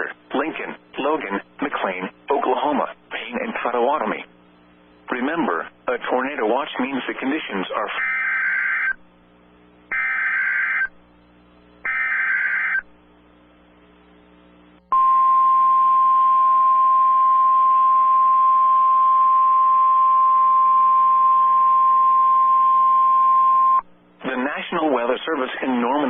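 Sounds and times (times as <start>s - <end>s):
steady warning alarm tone: 8.0s - 9.0s, 9.9s - 11.0s, 11.8s - 12.9s.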